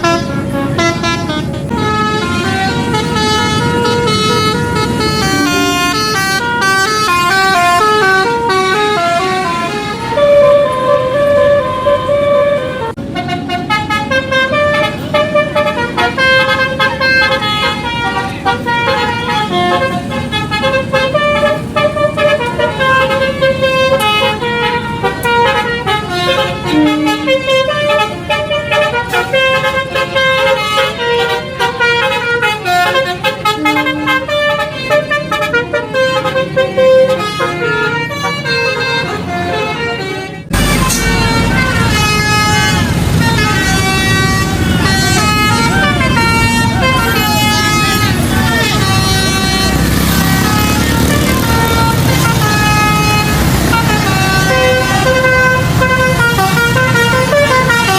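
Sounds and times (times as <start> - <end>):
multi-tone bus horns melody: 0.0 - 57.9
vehicle rumble: 0.0 - 57.9.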